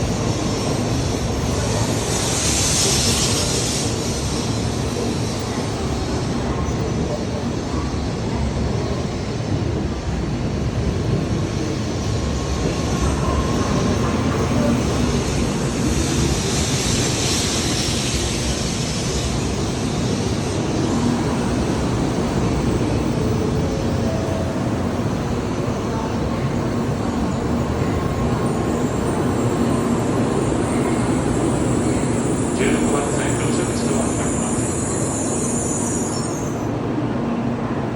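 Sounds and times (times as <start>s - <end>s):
high hiss: 0.0s - 6.4s
train rumble: 0.0s - 37.9s.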